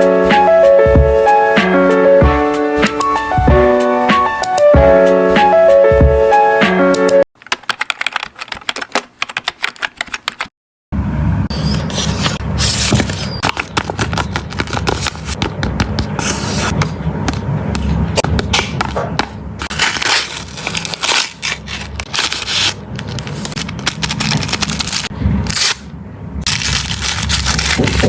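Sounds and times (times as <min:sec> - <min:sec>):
plastic wrapper crackling: 0:19.6 - 0:25.8, 0:26.5 - 0:28.0.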